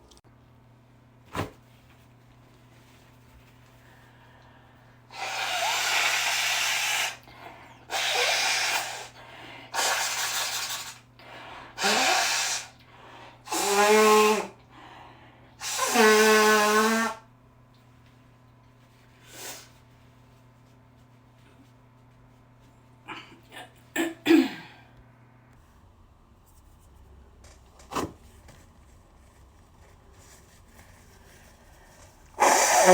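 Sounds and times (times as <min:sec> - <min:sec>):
person blowing congested nose: 0:05.1 - 0:07.2, 0:07.9 - 0:11.1, 0:11.7 - 0:12.8, 0:13.4 - 0:14.6, 0:15.6 - 0:17.2, 0:19.2 - 0:19.8, 0:31.2 - 0:32.9.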